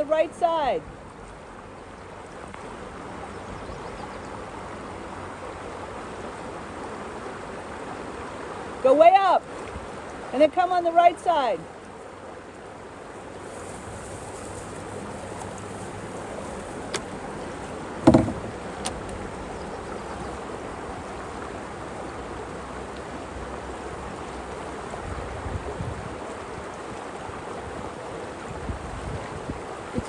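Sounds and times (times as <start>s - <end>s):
sharp knock: 18.0s - 18.6s.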